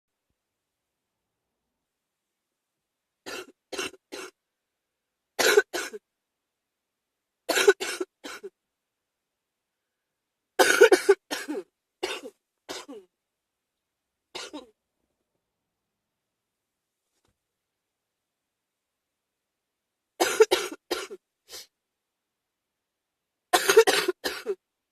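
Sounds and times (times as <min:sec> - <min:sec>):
person coughing: 0:03.3 - 0:04.4, 0:05.4 - 0:06.0, 0:07.5 - 0:08.5, 0:10.6 - 0:13.1, 0:14.4 - 0:14.7, 0:20.2 - 0:21.2, 0:23.6 - 0:24.6.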